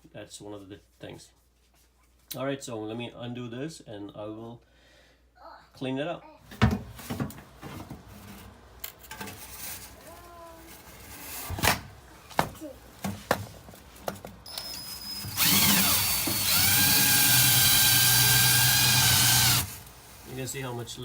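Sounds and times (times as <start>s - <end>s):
power drill motor whine: 14.5s - 20.2s.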